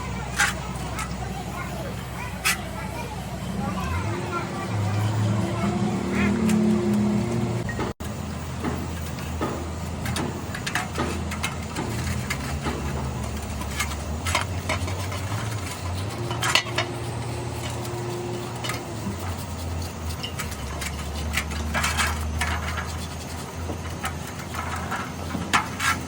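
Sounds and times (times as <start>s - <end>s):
metal tools clinking: 10.0s - 26.0s.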